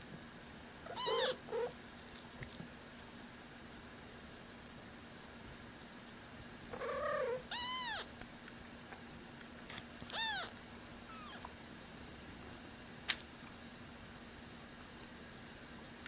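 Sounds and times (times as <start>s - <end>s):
kitten mewing: 0.9s - 1.8s, 6.8s - 8.1s, 10.1s - 11.5s.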